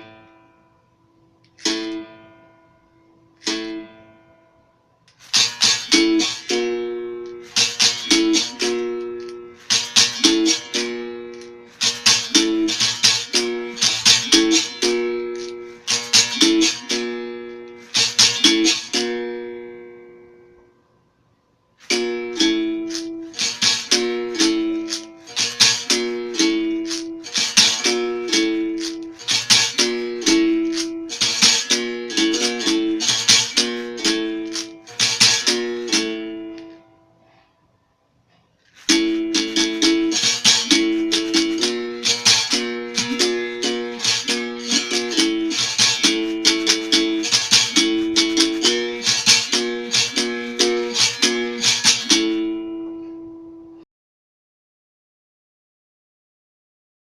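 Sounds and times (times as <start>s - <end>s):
berimbau notes: 0.0s - 53.8s
caxixi rattle shaken: 26.8s - 36.0s, 38.7s - 52.1s.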